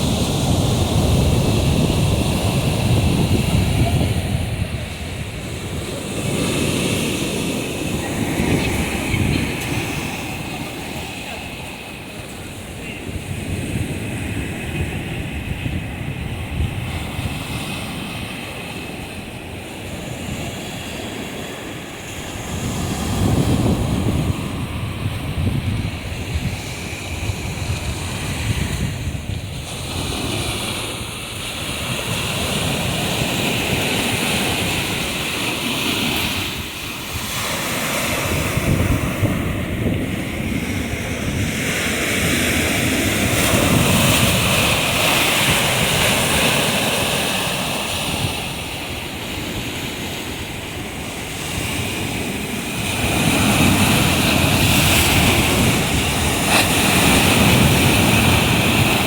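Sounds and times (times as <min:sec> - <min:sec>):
surf breaking on shore: 0:00.0 - 0:59.0
wind buffeting microphone: 0:00.0 - 0:59.0.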